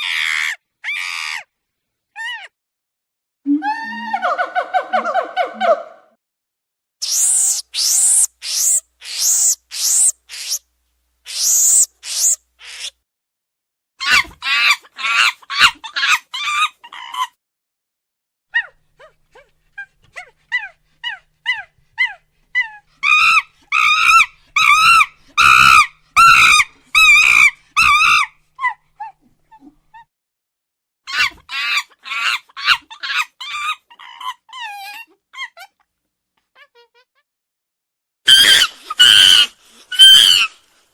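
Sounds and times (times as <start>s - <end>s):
monkey calls: 7.0s - 10.6s, 11.3s - 12.9s, 20.2s - 29.2s, 38.3s - 40.6s.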